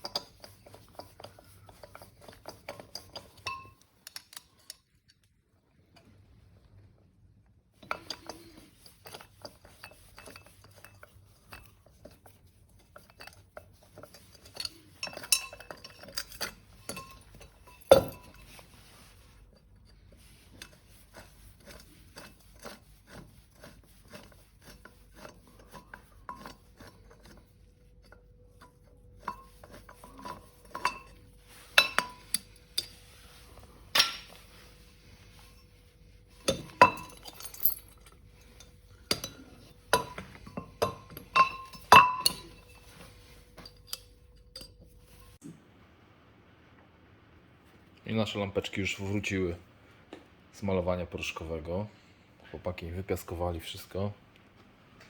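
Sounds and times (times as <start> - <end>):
metal parts clinking and scraping: 0.0 - 5.2, 12.8 - 18.7, 36.2 - 45.4.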